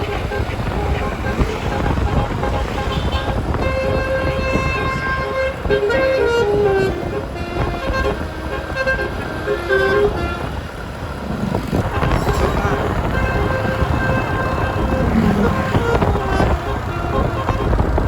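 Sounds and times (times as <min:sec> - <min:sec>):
bus horn playing a tune: 0:00.0 - 0:18.0
low rumble: 0:10.8 - 0:16.7.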